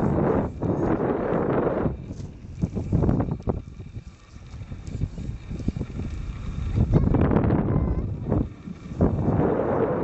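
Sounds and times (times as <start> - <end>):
gusty wind buffeting microphone: 0.0 - 10.0.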